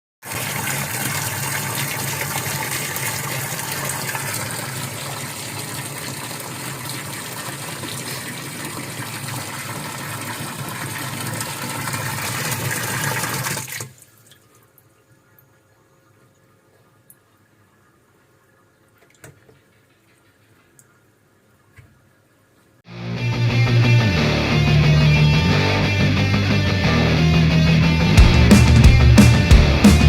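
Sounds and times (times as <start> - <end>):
water running: 0.2 - 21.8
faint water drips: 13.7 - 22.7.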